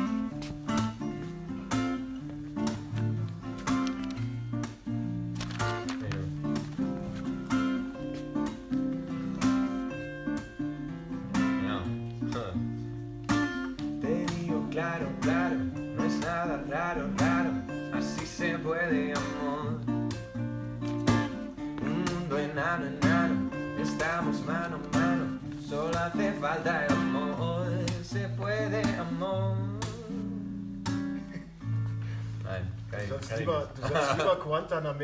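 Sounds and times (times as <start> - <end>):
acoustic guitar strummed: 0.0 - 32.8
person singing: 14.0 - 20.0, 21.8 - 30.4.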